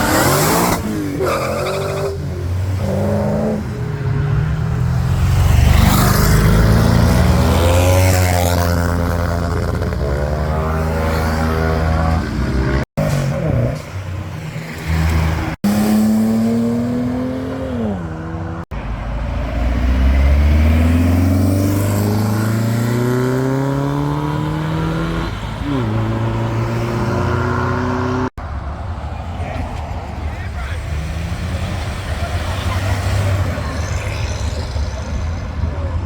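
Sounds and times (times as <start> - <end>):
car engine accelerating hard: 15.7 - 28.3.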